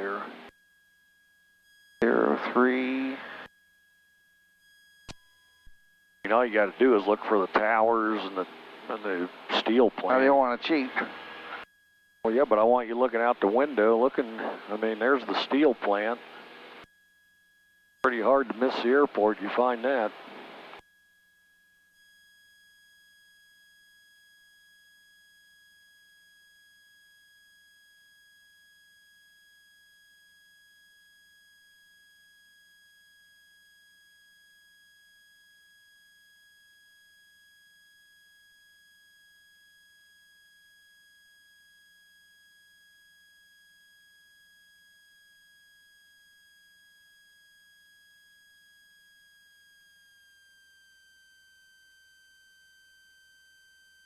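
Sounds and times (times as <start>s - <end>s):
high-pitched electrical whine: 2.0s - 3.6s, 4.6s - 11.7s.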